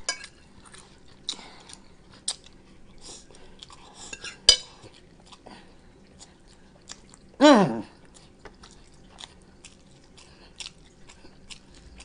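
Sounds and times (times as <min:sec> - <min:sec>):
person chewing: 0:00.0 - 0:12.0.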